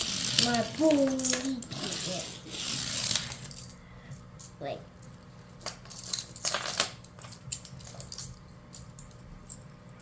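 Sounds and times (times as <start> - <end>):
toy pieces clicking and clacking: 0.0 - 3.8.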